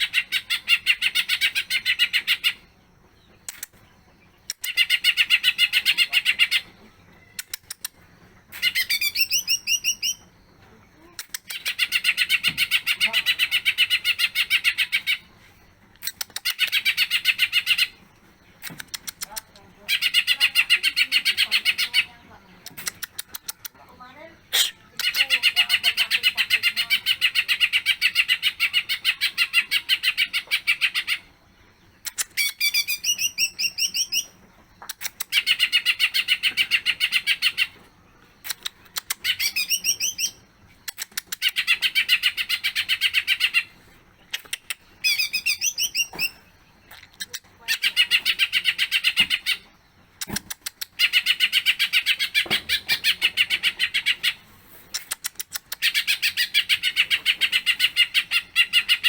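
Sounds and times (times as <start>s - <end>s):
bird trilling: 8.5s - 10.3s, 24.5s - 31.3s, 44.4s - 46.5s, 47.1s - 49.7s.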